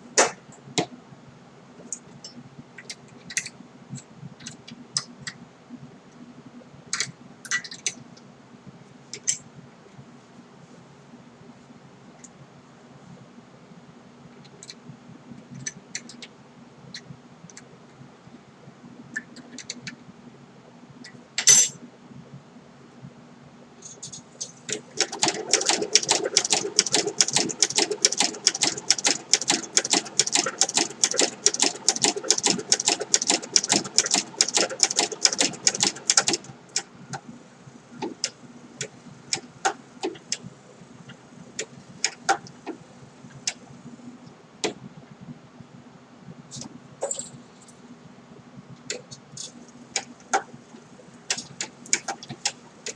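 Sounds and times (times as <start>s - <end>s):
sewing machine stitching: 25.0s - 36.4s.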